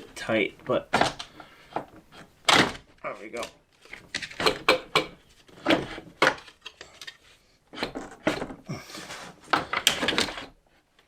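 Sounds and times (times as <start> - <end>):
metal parts knocking and clattering: 3.4 - 7.2, 9.4 - 10.6.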